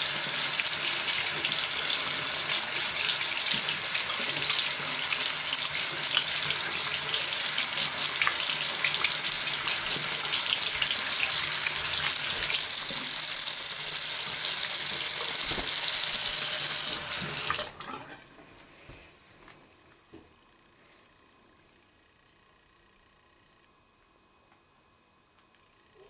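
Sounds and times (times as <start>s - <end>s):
tap water running into sink: 0.0s - 18.2s.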